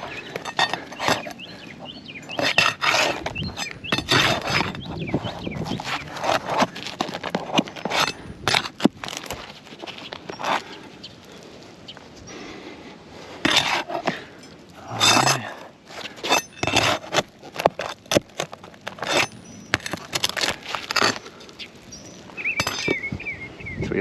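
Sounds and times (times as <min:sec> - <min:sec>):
scraping and sharp clicks: 0:00.0 - 0:10.8, 0:13.4 - 0:14.3, 0:14.9 - 0:22.0
metal tool prying nails from shingles: 0:02.2 - 0:04.8, 0:16.1 - 0:21.2, 0:22.6 - 0:23.0.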